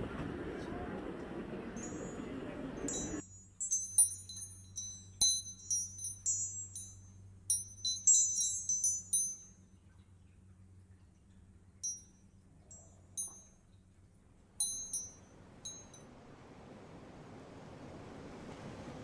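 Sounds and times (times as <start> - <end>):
high-pitched chimes tinkling: 2.8 - 9.8, 11.8 - 13.7, 14.6 - 16.1
steady rushing noise: 15.3 - 19.0.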